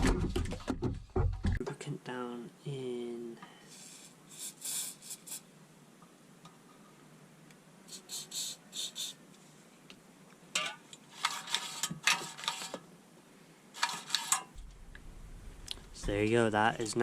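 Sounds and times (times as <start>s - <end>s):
spray lubricant hissing: 3.7s - 5.4s, 7.9s - 9.2s.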